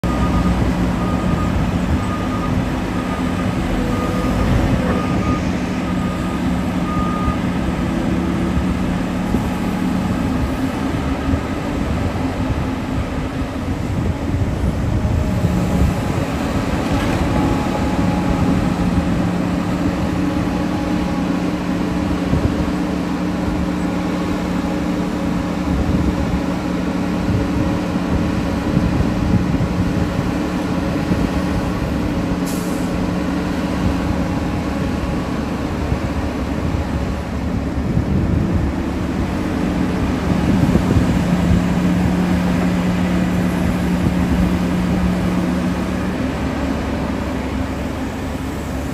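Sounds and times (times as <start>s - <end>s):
backup alarm beeping: 0.0s - 8.8s
diesel machinery running: 0.0s - 48.9s.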